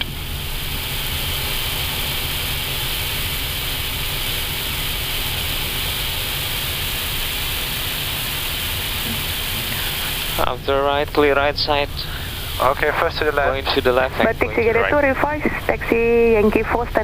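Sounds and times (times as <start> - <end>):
air-conditioning hiss: 0.0 - 17.0
idling jet engines rumble: 0.0 - 17.0.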